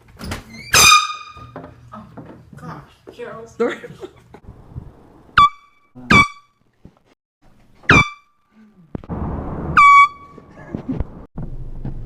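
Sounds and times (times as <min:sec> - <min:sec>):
air horn blasts: 0:00.7 - 0:01.5, 0:09.8 - 0:10.4.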